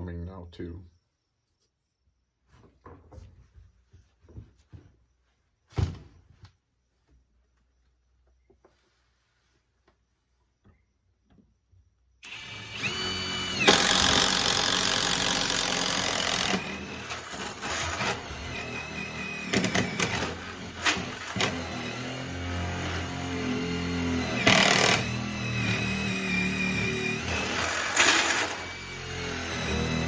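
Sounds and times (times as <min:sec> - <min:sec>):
electric drill boring wood: 0:12.2 - 0:30.0.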